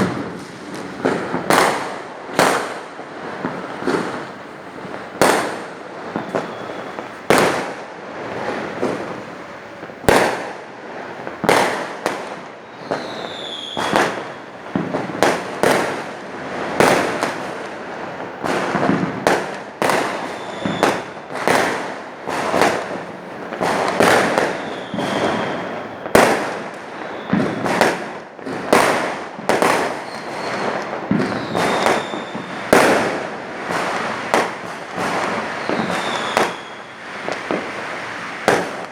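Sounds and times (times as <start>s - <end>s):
firework crackling: 0.0s - 38.9s
falling whistles: 6.2s - 7.1s, 12.6s - 14.3s, 20.3s - 21.1s, 24.5s - 26.2s, 27.0s - 27.7s, 30.0s - 32.6s, 35.5s - 37.0s.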